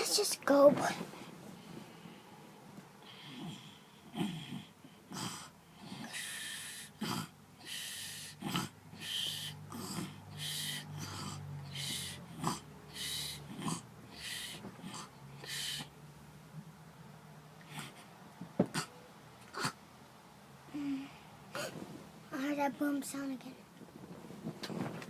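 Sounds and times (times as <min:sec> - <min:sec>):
wheezy hissing breaths: 0:01.2 - 0:16.0.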